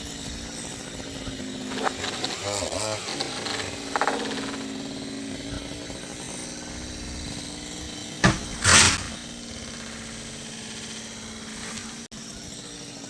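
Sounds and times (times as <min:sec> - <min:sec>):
chainsaw engine idling: 0:00.0 - 0:13.0
sharp knock: 0:08.2 - 0:09.2.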